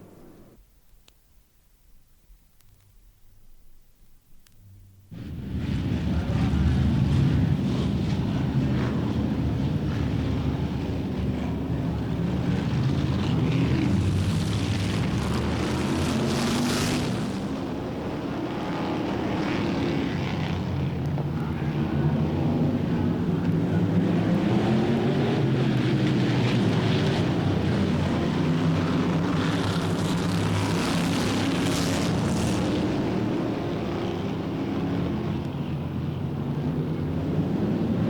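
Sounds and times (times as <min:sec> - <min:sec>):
racing cars at high revs: 0:12.3 - 0:17.8, 0:23.4 - 0:35.4.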